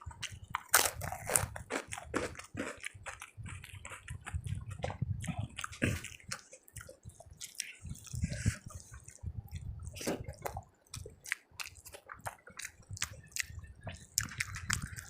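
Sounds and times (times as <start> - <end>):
person chewing wetly: 0.0 - 15.0
mouth smacking clicks: 4.1 - 15.0.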